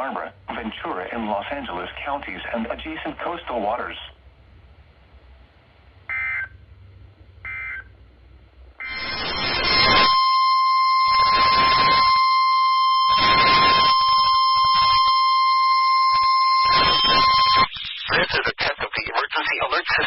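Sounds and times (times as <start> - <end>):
radio static hiss: 0.0 - 4.2, 8.8 - 10.1, 13.1 - 15.1, 16.1 - 20.0
steady alarm tone: 8.8 - 17.7.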